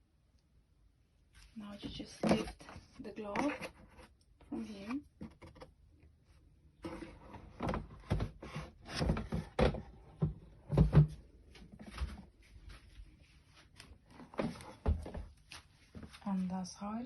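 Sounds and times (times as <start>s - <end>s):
plastic knocks scrapes and clunks: 1.9s - 5.8s, 6.8s - 12.2s.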